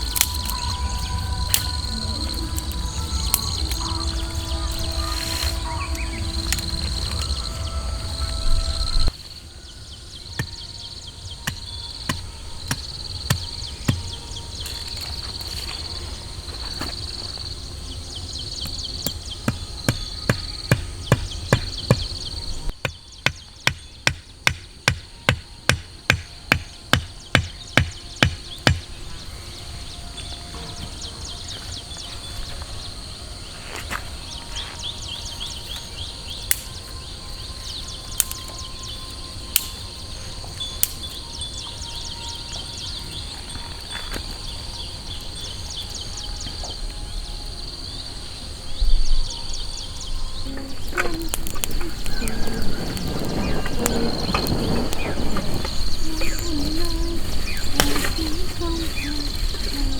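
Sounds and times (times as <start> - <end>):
insects chirping and trilling: 0.0 - 59.9
loud evenly spaced knocks: 18.7 - 28.9.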